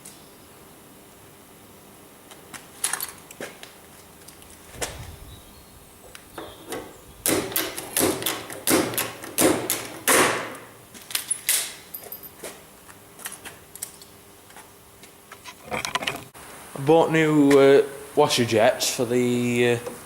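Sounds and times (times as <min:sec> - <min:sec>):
rustling and scraping: 0:02.3 - 0:05.3.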